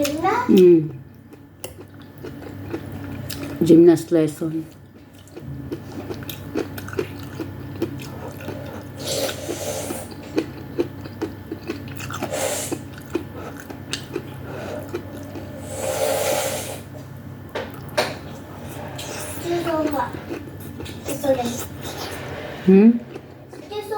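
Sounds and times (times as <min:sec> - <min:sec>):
wet chewing mouth clicks: 0:10.0 - 0:15.6.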